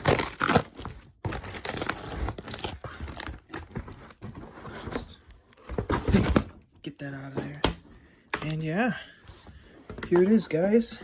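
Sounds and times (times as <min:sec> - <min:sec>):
packaging crumpling and tearing: 0:00.0 - 0:04.2.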